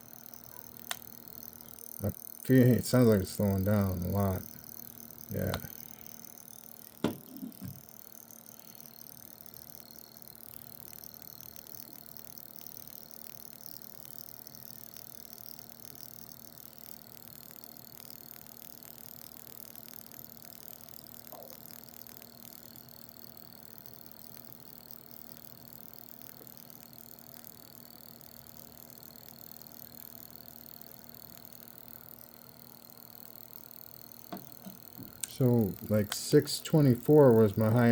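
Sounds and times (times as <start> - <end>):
fast faint clicks: 0.0 - 8.2
faint steady hum: 0.0 - 37.9.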